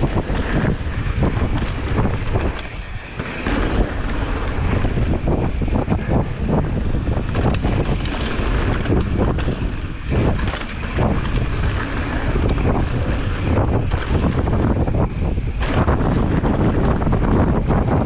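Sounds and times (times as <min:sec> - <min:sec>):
mountain bike rattling on dirt trail: 0:00.0 - 0:18.0
wind buffeting microphone: 0:00.0 - 0:18.0.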